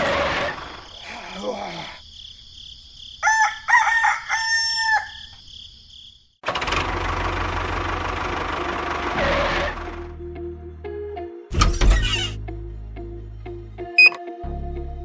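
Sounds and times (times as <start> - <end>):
rooster crowing: 3.2 - 5.5.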